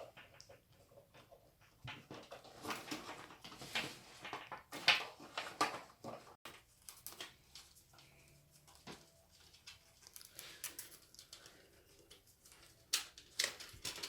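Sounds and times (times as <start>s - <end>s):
hands handling computer parts: 1.6s - 14.0s.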